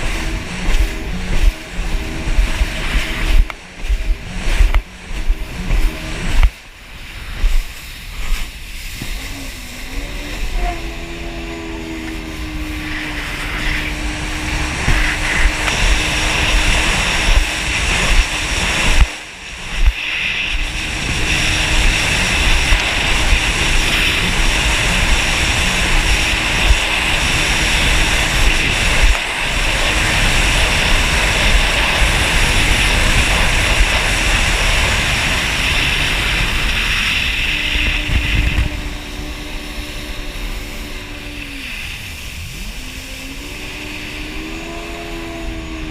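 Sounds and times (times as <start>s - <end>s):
jet ski engine revving: 0.0s - 45.9s
wind buffeting microphone: 0.0s - 45.9s.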